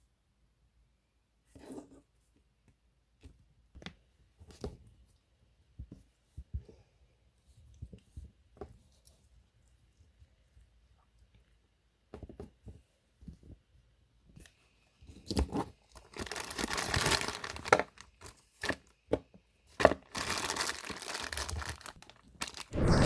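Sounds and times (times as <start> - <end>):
packaging tearing and crinkling: 16.2 - 17.8, 20.1 - 22.7.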